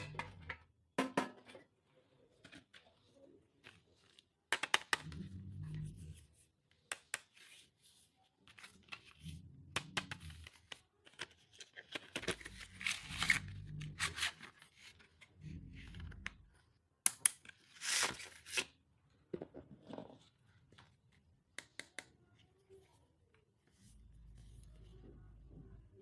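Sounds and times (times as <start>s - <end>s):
packaging being torn and rustled: 10.6s - 14.7s.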